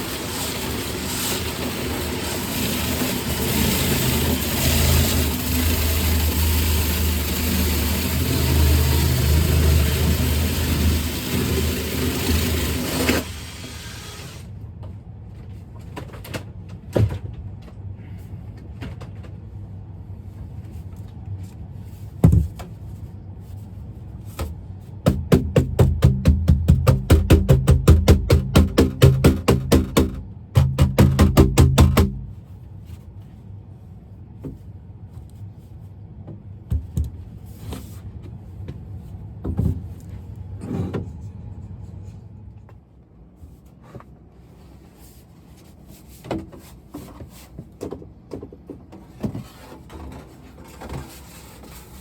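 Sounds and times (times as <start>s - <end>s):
motor-driven machine humming: 2.0s - 14.5s
knocks: 25.1s - 32.4s.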